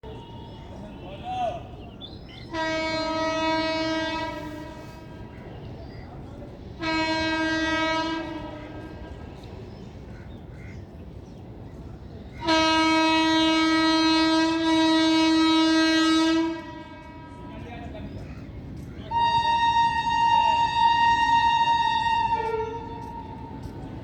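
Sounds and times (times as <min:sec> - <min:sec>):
locomotive horn blasts: 0:00.0 - 0:01.7, 0:02.5 - 0:05.4, 0:06.8 - 0:09.3, 0:12.4 - 0:17.6, 0:19.1 - 0:23.8.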